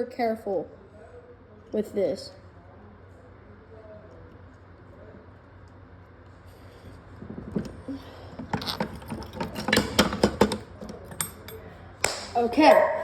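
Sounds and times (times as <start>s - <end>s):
hard parts clicking and rattling: 6.7s - 13.0s.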